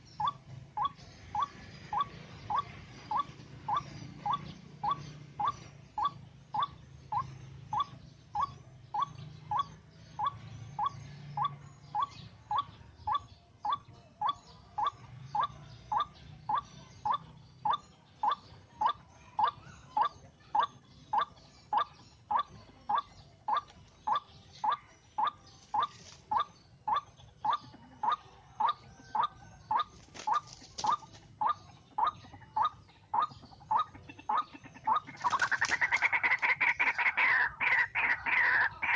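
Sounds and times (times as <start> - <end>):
waterhen calling: 33.2 - 38.9.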